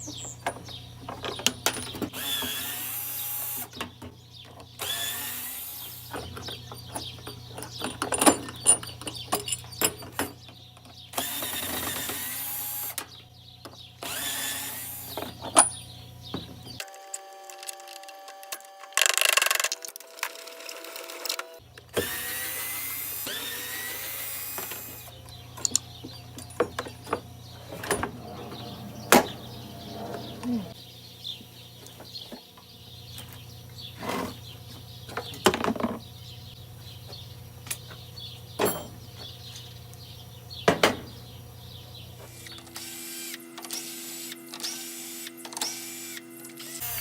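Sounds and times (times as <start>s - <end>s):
power drill running: 2.2s - 3.7s, 4.8s - 6.1s, 11.2s - 13.0s, 14.0s - 15.2s, 21.9s - 25.2s, 42.3s - 47.0s
metal parts clanking: 6.3s - 10.4s, 25.5s - 30.8s, 38.6s - 39.1s
steady low hum: 24.9s - 35.4s.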